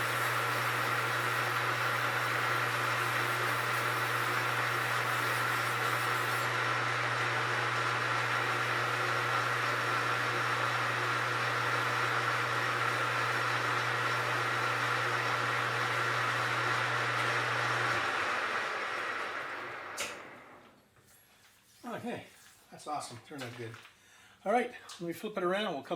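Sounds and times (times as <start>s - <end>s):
metal lathe running: 0.0s - 20.5s.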